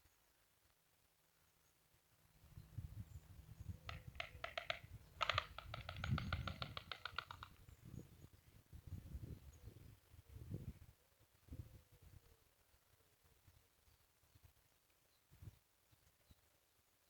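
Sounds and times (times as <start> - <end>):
storks clattering bills: 3.9 - 7.5.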